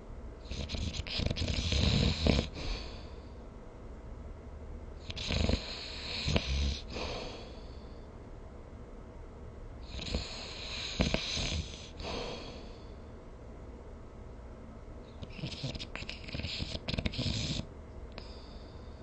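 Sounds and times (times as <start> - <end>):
person snoring: 0.5 - 3.2, 5.1 - 7.6, 9.9 - 12.7.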